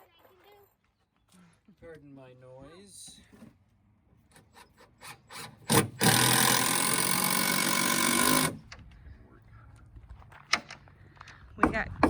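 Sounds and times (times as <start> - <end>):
power tool cutting wood: 5.0 - 8.6.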